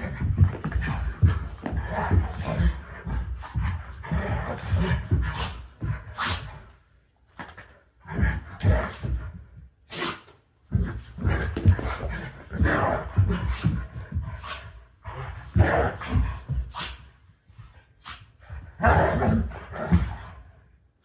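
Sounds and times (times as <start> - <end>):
dog sneezes: 9.9 - 10.3.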